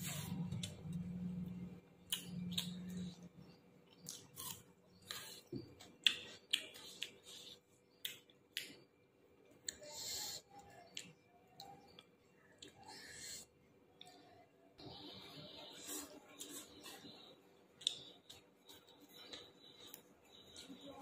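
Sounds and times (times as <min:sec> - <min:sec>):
chewing with wet mouth clicks: 0:02.0 - 0:03.2, 0:03.9 - 0:08.8, 0:17.8 - 0:20.7.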